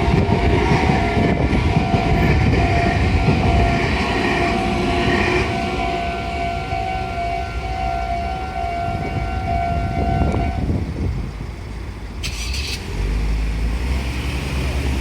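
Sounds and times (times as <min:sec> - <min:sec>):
level crossing warning bell: 0:00.0 - 0:10.4
passing train rumble: 0:00.0 - 0:15.0.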